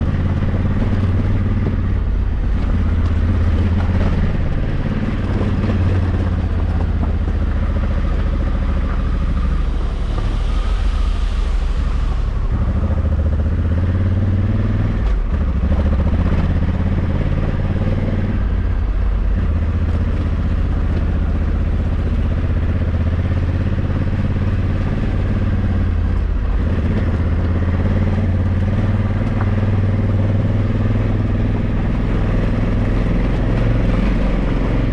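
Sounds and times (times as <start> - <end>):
motorcycle engine under load: 0.0 - 34.9.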